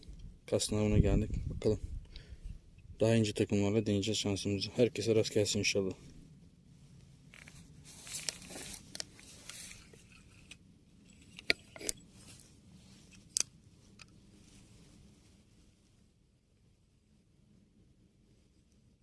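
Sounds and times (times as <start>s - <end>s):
handling clicks and rustles: 6.9s - 15.2s.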